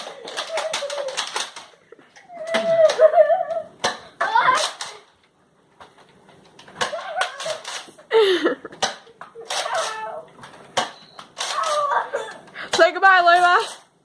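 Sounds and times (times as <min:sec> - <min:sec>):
people laughing: 0:00.2 - 0:03.8, 0:06.9 - 0:08.8.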